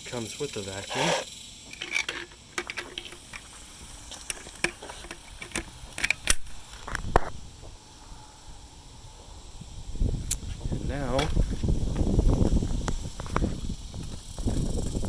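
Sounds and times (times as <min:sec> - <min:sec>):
plastic vacuum accessories clicking: 0:04.2 - 0:07.0.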